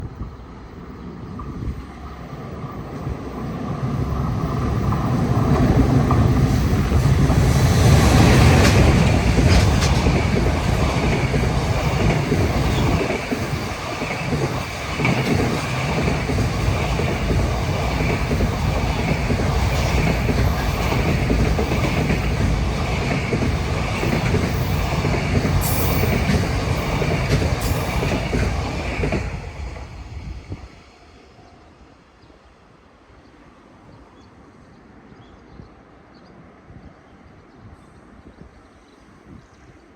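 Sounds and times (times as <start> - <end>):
freight train passing: 0.0 - 39.9
clacks from rails: 8.1 - 29.3.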